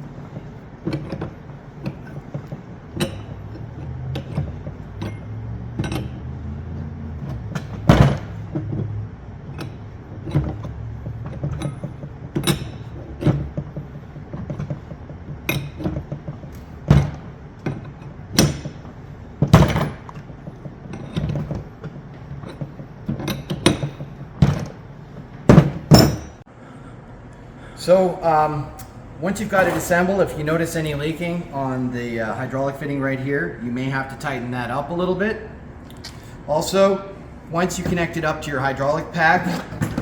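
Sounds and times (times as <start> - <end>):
wrench clicking and knocking on metal: 0.8 - 6.3.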